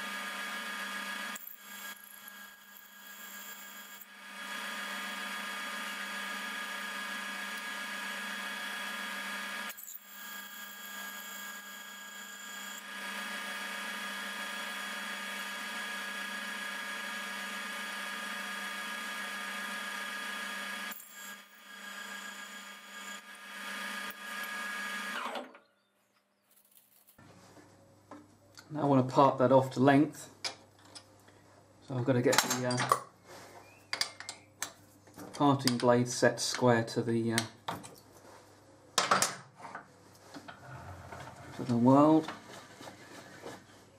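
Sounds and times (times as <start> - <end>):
metal lathe whining: 0.0 - 25.5.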